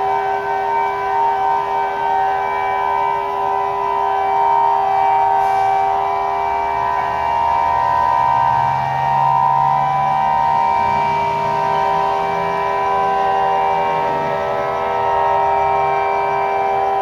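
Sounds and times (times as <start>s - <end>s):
civil defense sirens steady tone: 0.0s - 17.0s.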